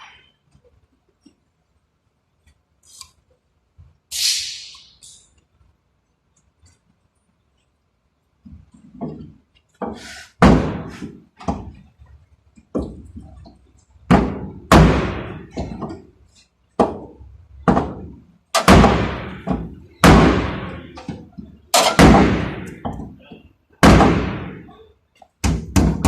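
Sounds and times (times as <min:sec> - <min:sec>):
hammer knocks on car bodywork: 0:10.4 - 0:11.8, 0:14.1 - 0:16.0, 0:16.8 - 0:21.2, 0:23.8 - 0:24.6, 0:25.4 - 0:26.0.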